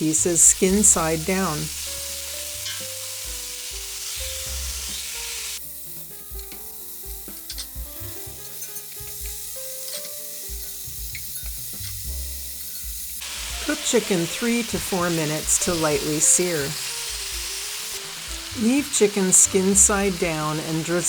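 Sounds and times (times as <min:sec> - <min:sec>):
chicken sizzling in hot oil: 0:00.0 - 0:21.0
oil popping: 0:08.4 - 0:20.7.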